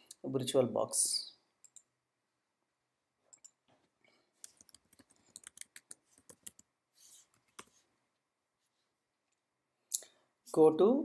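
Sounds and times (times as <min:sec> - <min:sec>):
keyboard typing: 0:04.4 - 0:06.7.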